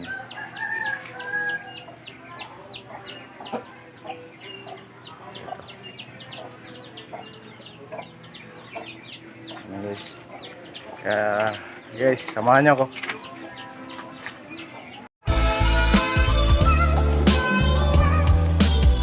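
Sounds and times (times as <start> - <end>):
birds chirping: 0.0 - 15.1.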